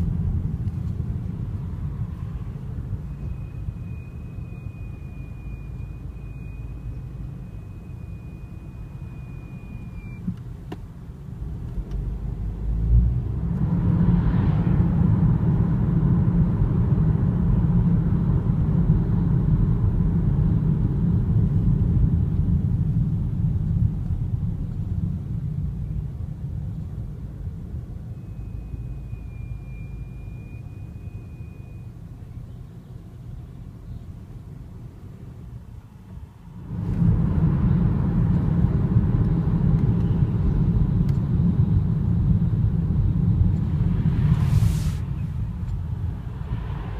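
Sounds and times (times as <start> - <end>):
car driving rumble: 0.0 - 46.9
brakes squealing: 1.9 - 10.4, 28.0 - 32.6.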